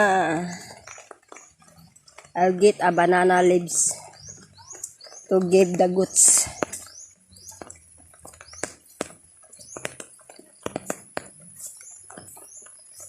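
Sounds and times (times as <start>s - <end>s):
small birds chirping: 0.0s - 13.0s
sharp clicks and taps: 6.5s - 12.8s.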